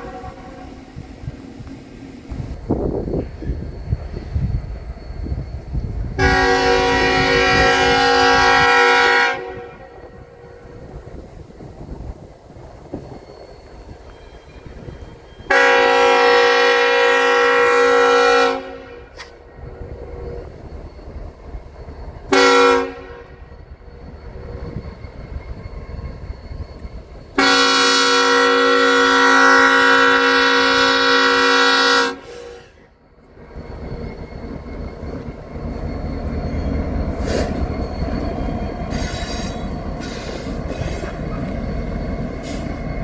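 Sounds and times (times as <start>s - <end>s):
locomotive horn blasts: 0.0s - 0.9s, 6.2s - 10.0s, 15.4s - 19.2s, 22.3s - 23.4s, 27.4s - 32.9s
diesel engines and train rumbling: 0.0s - 43.0s.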